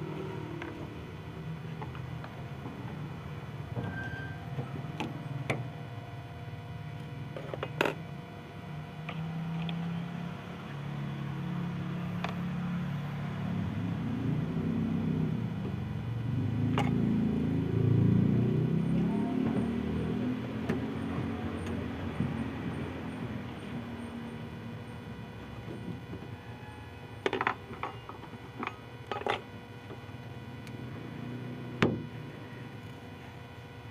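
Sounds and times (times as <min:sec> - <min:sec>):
engine rumble: 0:00.0 - 0:33.9.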